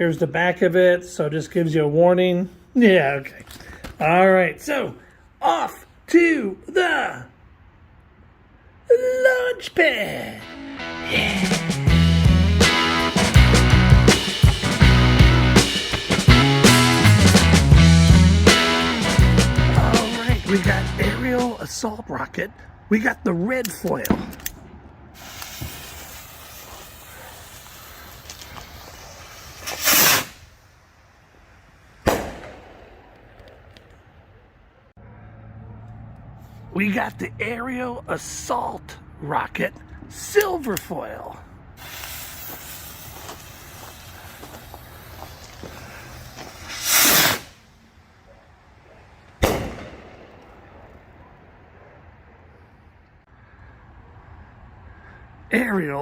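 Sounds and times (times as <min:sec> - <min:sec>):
firework fuse hissing: 0:11.1 - 0:21.5, 0:25.2 - 0:33.1, 0:41.8 - 0:47.8
firework bang: 0:25.2 - 0:30.5, 0:32.0 - 0:33.4, 0:41.8 - 0:47.6, 0:49.4 - 0:51.1
rocket launch whoosh: 0:25.2 - 0:30.8, 0:31.9 - 0:33.4, 0:41.8 - 0:47.7, 0:49.4 - 0:51.0
faint firework crackles: 0:25.2 - 0:34.3, 0:41.8 - 0:51.6.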